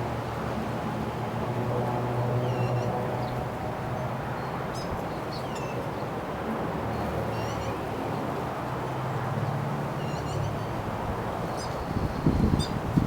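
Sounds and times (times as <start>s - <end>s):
wind rushing over microphone: 10.8s - 13.0s.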